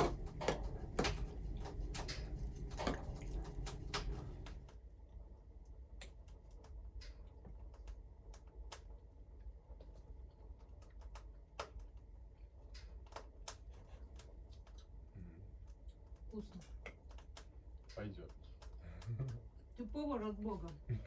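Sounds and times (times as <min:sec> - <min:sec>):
utensil clicking against dish: 0:00.0 - 0:04.7.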